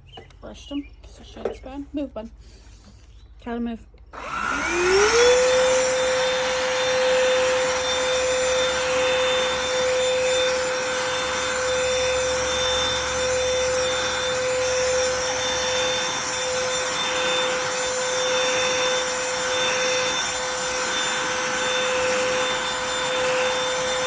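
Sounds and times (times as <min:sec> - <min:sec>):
handheld vacuum motor whine: 0:04.0 - 0:24.0.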